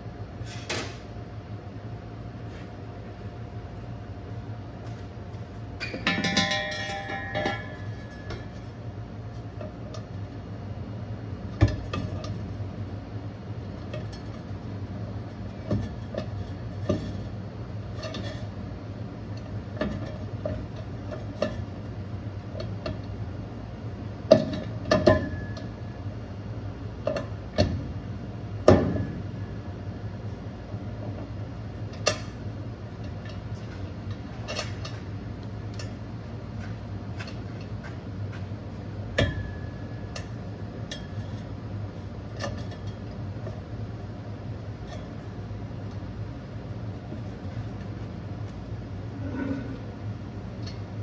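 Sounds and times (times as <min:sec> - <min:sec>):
steady low hum: 0:00.0 - 0:51.0
metal clanks and knocks: 0:05.8 - 0:08.6, 0:39.1 - 0:41.5.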